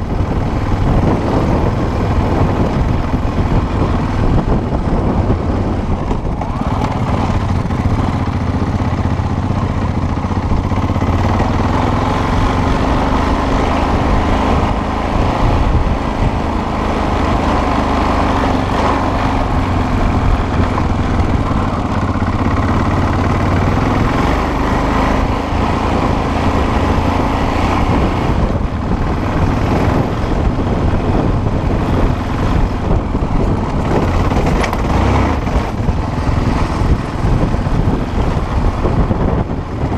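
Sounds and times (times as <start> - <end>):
constant rushing noise: 0.0 - 39.9
motorcycle engine running: 0.0 - 39.9.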